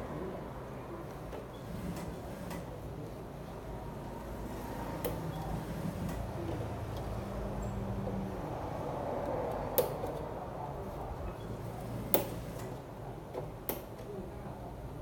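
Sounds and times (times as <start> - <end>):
clicks and taps of tools: 9.7 - 10.2, 13.3 - 14.1.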